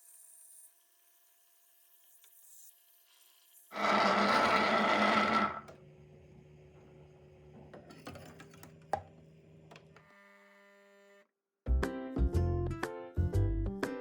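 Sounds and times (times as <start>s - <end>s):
small electric motor whirring: 0.0s - 5.7s.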